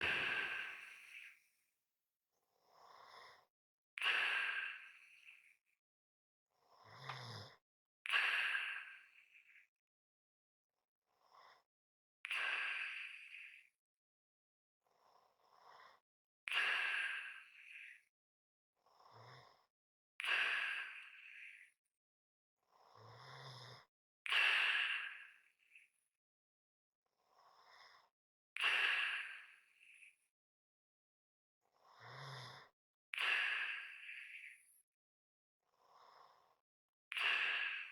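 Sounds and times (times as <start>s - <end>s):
heavy breathing with whistle: 0.0s - 0.9s.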